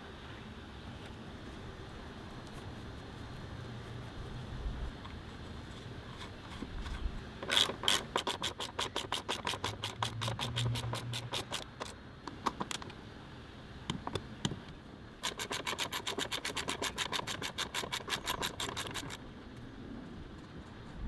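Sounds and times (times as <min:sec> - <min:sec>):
hand ratchet clicking: 0:07.4 - 0:12.9, 0:15.2 - 0:19.2.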